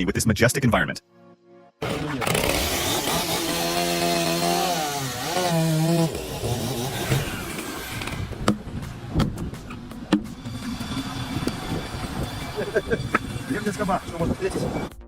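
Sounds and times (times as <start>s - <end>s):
chainsaw engine revving: 1.8s - 9.1s, 10.4s - 14.9s.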